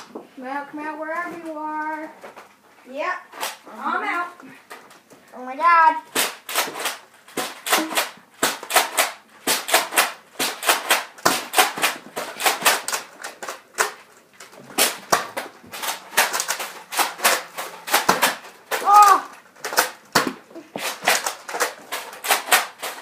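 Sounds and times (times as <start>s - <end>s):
toy blaster plastic clacks: 6.1s - 23.0s.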